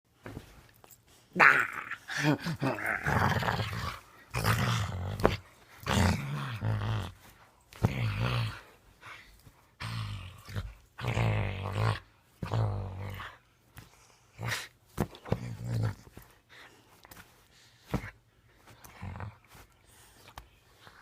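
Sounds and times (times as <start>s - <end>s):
dog grumbling: 1.3s - 7.2s.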